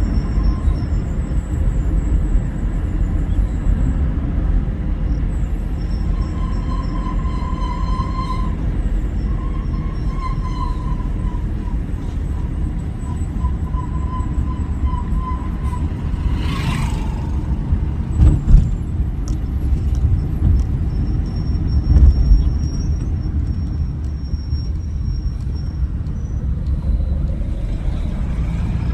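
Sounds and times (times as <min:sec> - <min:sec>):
bus engine rumble: 0:00.0 - 0:28.9.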